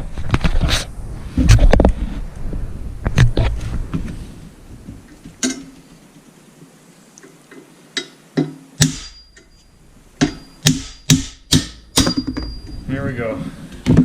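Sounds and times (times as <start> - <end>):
hammer striking metal punch: 8.4 - 9.5, 10.2 - 12.7.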